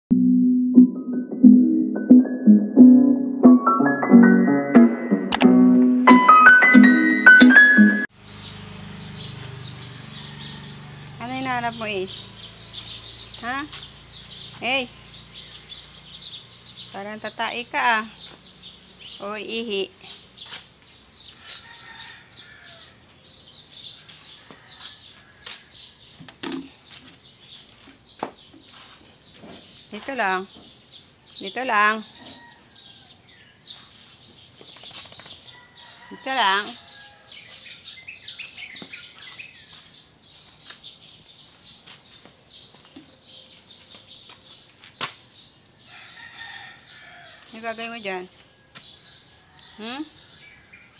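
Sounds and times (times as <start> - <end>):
high-pitched insect drone: 8.1 - 20.9
insect drone: 8.1 - 50.9
bird chirps: 8.3 - 21.6, 36.6 - 44.7.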